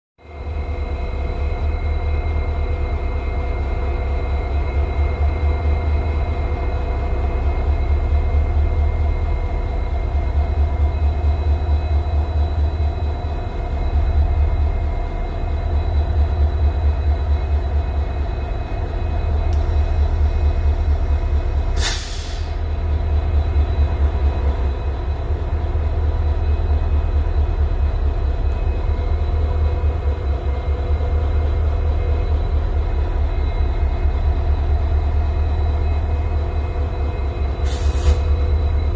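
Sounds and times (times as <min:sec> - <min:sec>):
diesel locomotives idling: 0:00.3 - 0:38.9
short sharp hiss: 0:21.8 - 0:22.6.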